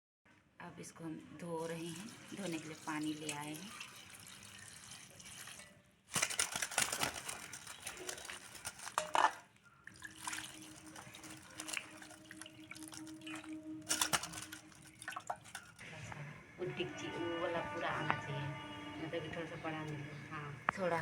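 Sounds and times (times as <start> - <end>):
leaves washed in water splashing: 1.6 - 15.9.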